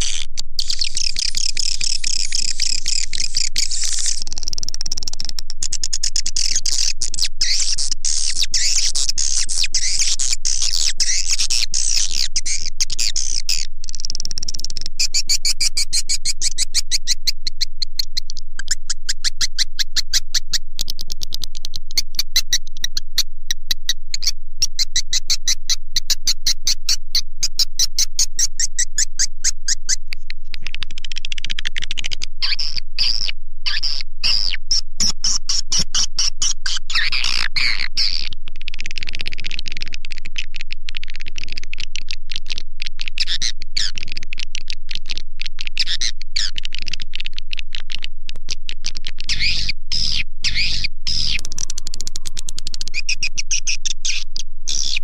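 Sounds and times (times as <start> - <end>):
swiftlet chirps and twitters: 0.0 - 4.4, 49.3 - 55.0.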